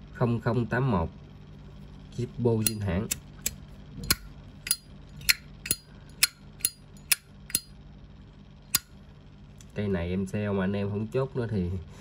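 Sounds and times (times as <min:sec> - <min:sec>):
lighter lid metallic clicks: 0:02.6 - 0:07.7.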